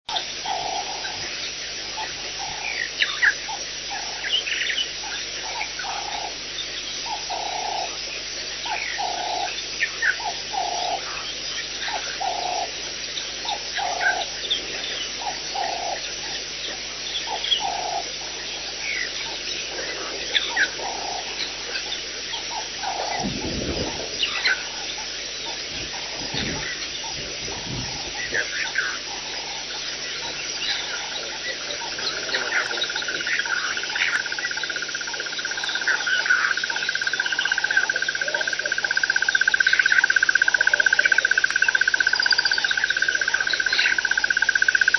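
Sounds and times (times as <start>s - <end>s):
low repeated bird call: 0.1s - 44.9s
low rumbles: 22.8s - 33.8s.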